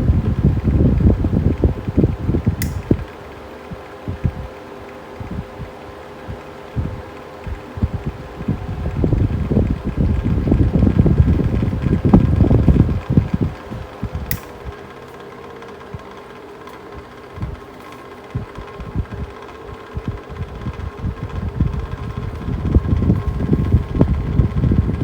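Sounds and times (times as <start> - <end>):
fan airflow buffeting microphone: 0.0 - 25.0
fan motor hum: 0.0 - 25.0
sharp click: 2.6 - 3.0, 14.2 - 14.7.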